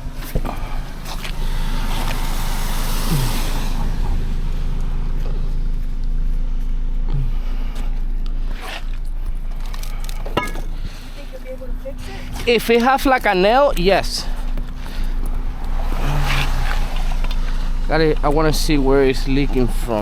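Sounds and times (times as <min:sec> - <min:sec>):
air compressor motor hum: 0:00.0 - 0:05.2
air hiss: 0:00.7 - 0:04.1.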